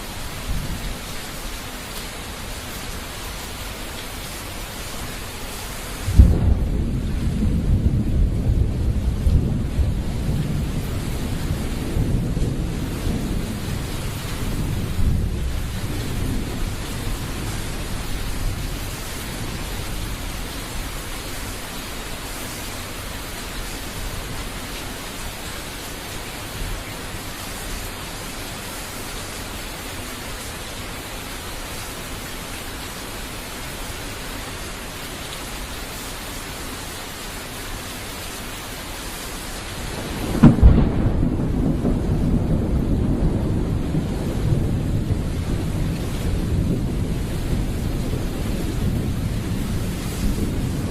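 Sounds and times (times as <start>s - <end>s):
steady rain hiss: 0.0s - 50.9s
low thunder rumble: 0.3s - 1.4s, 6.0s - 21.6s, 39.8s - 50.9s
loud thunderclap: 6.0s - 20.9s, 39.9s - 50.9s.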